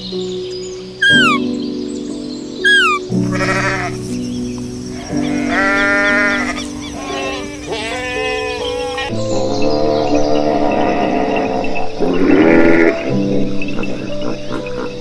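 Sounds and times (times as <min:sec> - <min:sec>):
background music with sustained notes: 0:00.0 - 0:15.0
sheep bleating: 0:02.7 - 0:04.0, 0:05.2 - 0:09.1.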